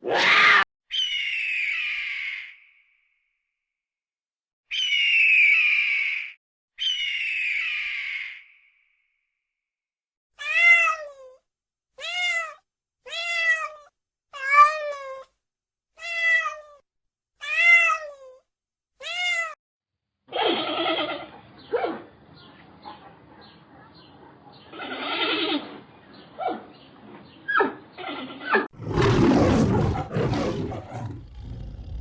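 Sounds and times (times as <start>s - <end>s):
cat meowing: 10.4s - 11.4s, 12.0s - 15.2s, 16.0s - 16.8s, 17.4s - 18.4s, 19.0s - 19.6s
rough animal sound: 28.0s - 32.0s.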